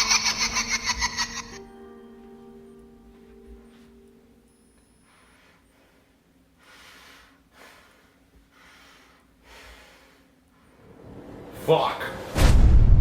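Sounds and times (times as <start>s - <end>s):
soft breathing: 4.6s - 11.0s.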